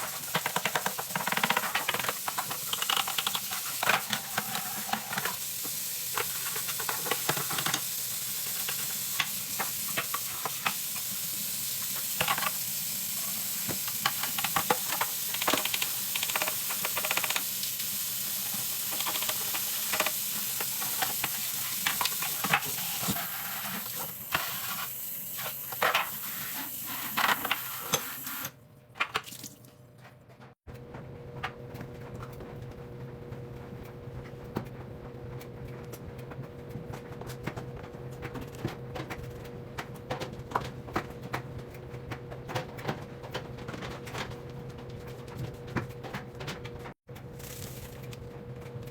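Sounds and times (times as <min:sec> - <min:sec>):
scraping and knocking on washing machine: 0:00.0 - 0:05.4, 0:06.1 - 0:10.8.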